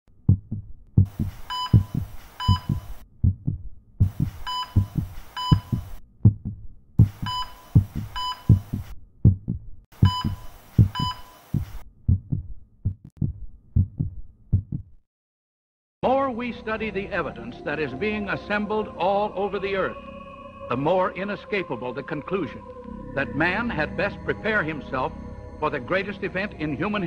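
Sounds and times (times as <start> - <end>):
heartbeat-like thumping: 0.2 - 15.0
static hiss bursts: 1.0 - 3.0, 4.0 - 6.0, 7.0 - 8.9, 10.0 - 11.8
short electronic beeps: 1.5 - 2.9, 4.4 - 5.9, 7.2 - 8.7, 10.0 - 11.5.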